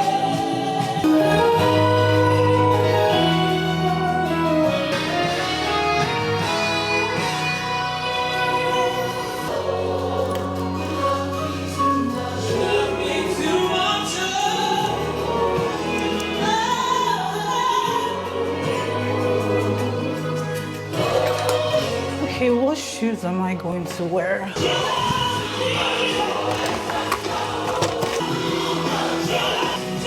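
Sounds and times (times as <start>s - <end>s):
choir singing gospel music: 0.0s - 30.0s
sustained bass notes: 1.0s - 9.5s.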